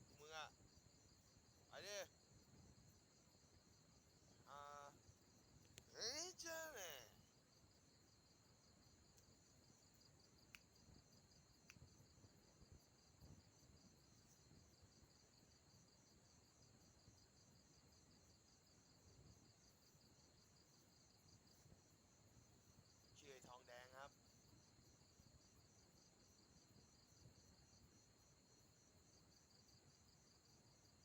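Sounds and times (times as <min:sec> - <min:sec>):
faint insect chirring: 0:00.0 - 0:31.0.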